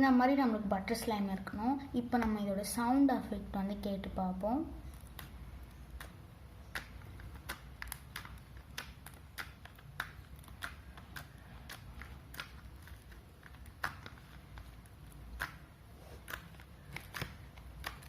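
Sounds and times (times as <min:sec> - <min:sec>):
slime sticky clicks and pops: 0:04.9 - 0:18.0.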